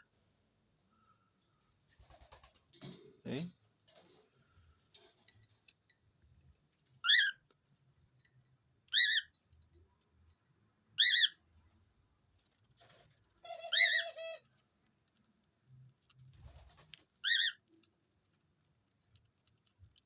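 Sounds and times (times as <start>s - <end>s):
cockatiel warbling chirps: 7.0s - 7.4s, 9.0s - 9.3s, 11.0s - 11.4s, 13.5s - 14.4s.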